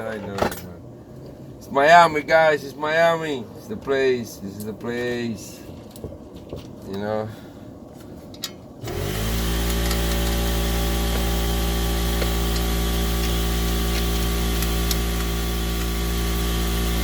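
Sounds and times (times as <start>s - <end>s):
motor humming: 8.8s - 17.0s.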